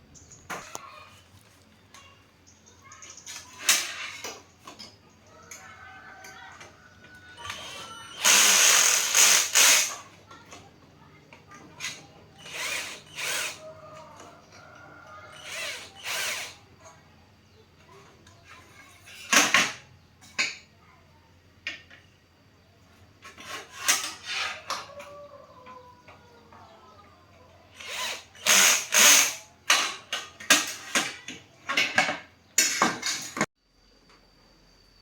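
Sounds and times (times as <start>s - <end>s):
handheld power tool bursts: 7.4s - 10.2s, 11.8s - 13.6s, 15.3s - 16.6s, 27.7s - 31.2s.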